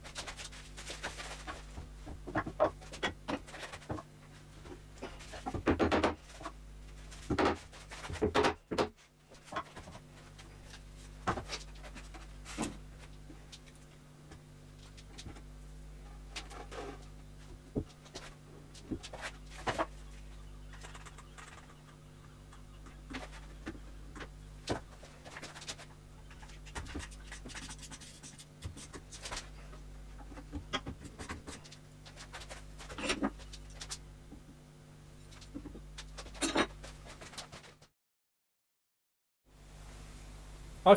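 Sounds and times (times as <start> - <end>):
wooden furniture parts knocking: 5.4 - 6.4, 7.2 - 9.9
low hum: 9.9 - 28.4.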